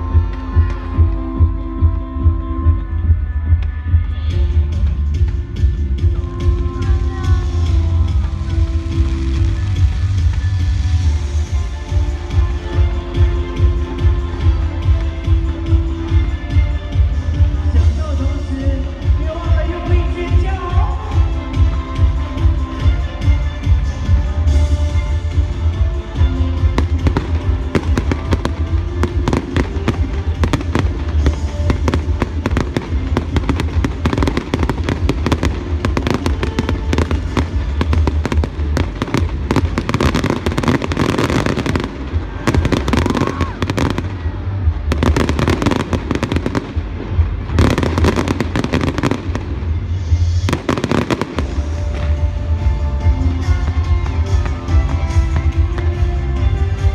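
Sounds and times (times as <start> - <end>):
loud music with heavy bass: 0.0 - 56.9
fireworks bursting rapidly: 26.7 - 44.3, 44.9 - 52.5.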